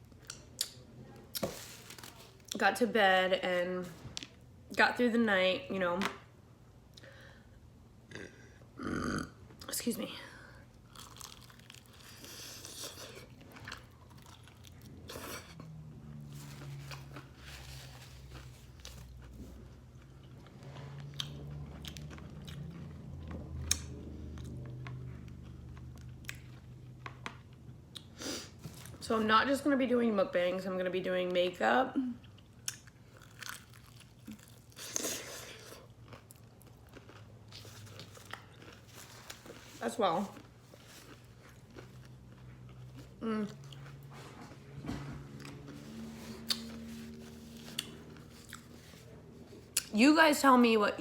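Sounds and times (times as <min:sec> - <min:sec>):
crunchy chewing of food: 0:10.8 - 0:29.0, 0:32.2 - 0:49.9.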